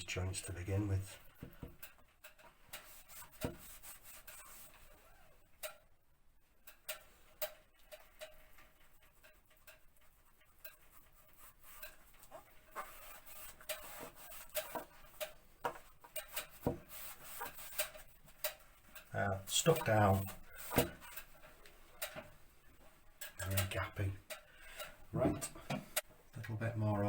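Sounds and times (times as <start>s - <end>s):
wallpaper rubbing: 2.5s - 5.5s, 7.0s - 26.0s
small clicks and taps: 6.6s - 26.6s.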